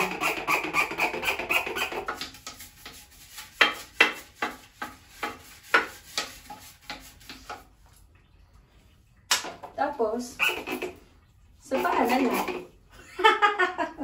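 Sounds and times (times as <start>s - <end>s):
scrubbing brush rasping: 0.0s - 8.1s, 10.0s - 12.8s.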